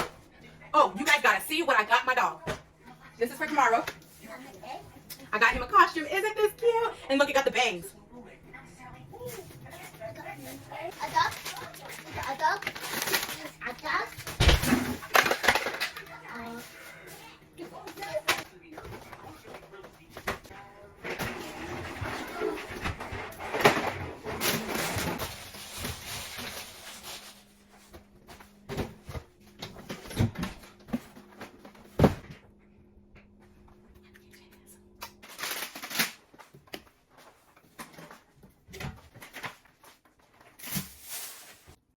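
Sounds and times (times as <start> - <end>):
groceries rustling: 9.2 - 32.0, 35.2 - 42.0.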